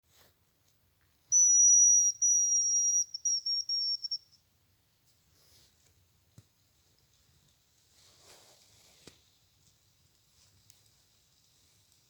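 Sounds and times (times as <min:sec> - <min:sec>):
bird high thin whistle: 0:01.3 - 0:04.3.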